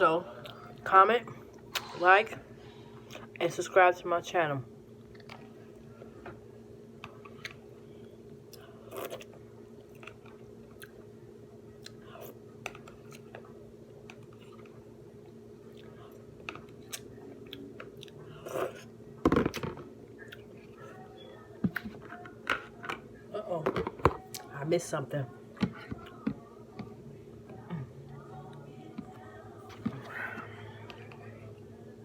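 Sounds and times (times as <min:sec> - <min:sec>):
steady background hum: 0:00.0 - 0:32.0
person chewing and crunching food: 0:07.0 - 0:11.1, 0:11.7 - 0:21.0.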